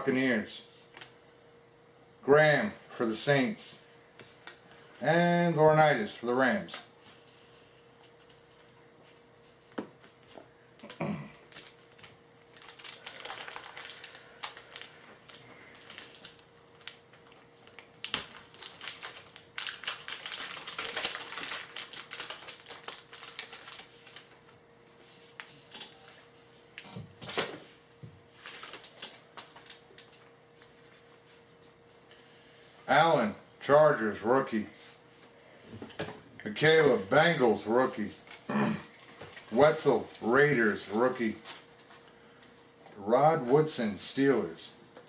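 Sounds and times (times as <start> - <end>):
cards rustling and crinkling: 11.5 - 24.5, 28.4 - 30.2.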